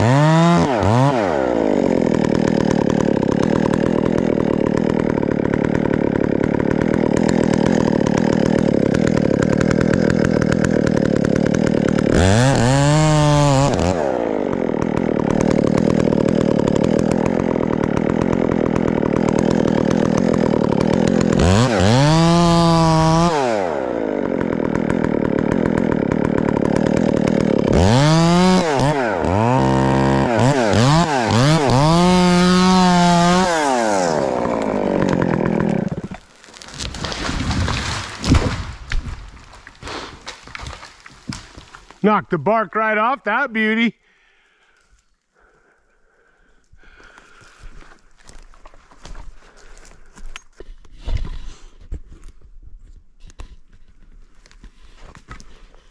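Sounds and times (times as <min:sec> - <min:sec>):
chainsaw engine revving: 0:00.0 - 0:42.1
chainsaw cutting wood: 0:00.0 - 0:52.5, 0:53.2 - 0:55.9.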